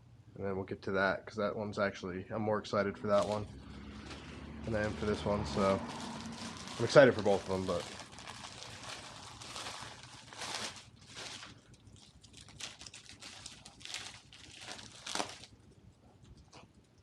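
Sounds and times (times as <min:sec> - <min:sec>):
packaging rustling and crinkling: 0:03.0 - 0:15.6.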